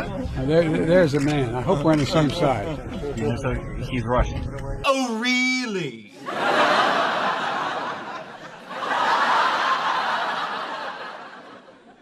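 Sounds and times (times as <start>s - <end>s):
audience laughing: 6.2s - 12.0s.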